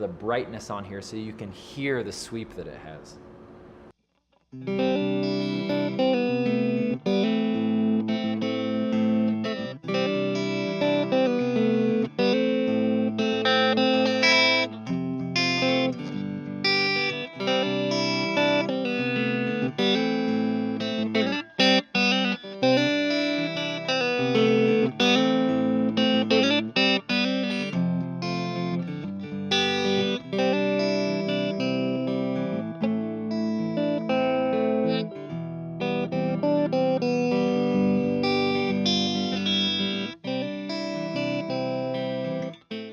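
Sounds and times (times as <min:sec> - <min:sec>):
clean electric guitar playing: 0:04.6 - 0:42.9.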